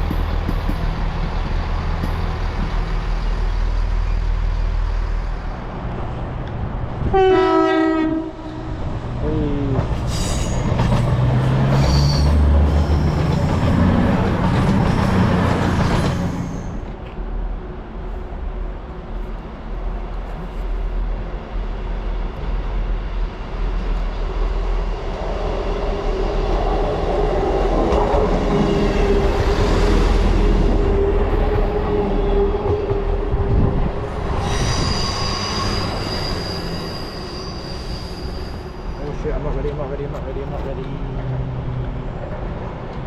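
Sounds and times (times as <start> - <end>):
train running past: 0.0 - 43.0
high-pitched wheel squeal: 11.7 - 13.5, 34.4 - 39.2.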